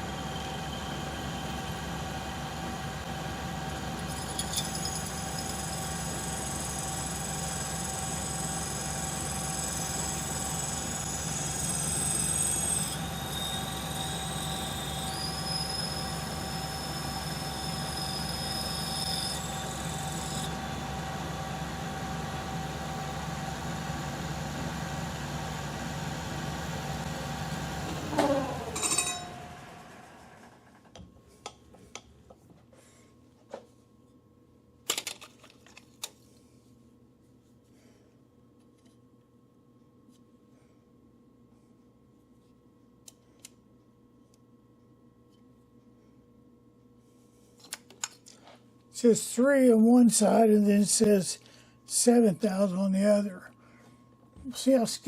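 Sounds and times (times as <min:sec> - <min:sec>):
metal lathe humming: 0:00.0 - 0:30.2.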